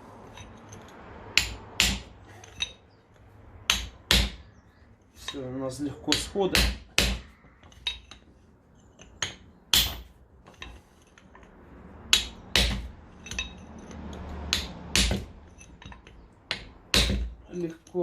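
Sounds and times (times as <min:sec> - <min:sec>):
hammer striking chisel on metal: 0:01.3 - 0:02.8, 0:03.7 - 0:04.5, 0:06.0 - 0:08.3, 0:09.0 - 0:10.8, 0:12.1 - 0:17.7.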